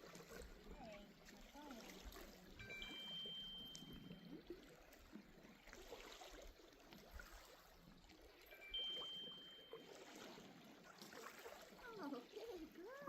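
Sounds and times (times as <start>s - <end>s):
water lapping and gurgling: 0.0s - 13.0s
thin high tone: 2.6s - 4.6s, 8.5s - 10.5s.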